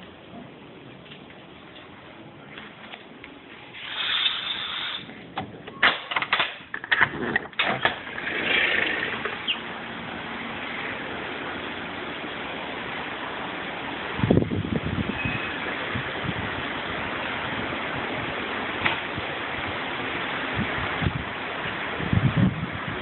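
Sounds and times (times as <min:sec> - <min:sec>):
steady rushing noise: 0:07.9 - 0:23.0.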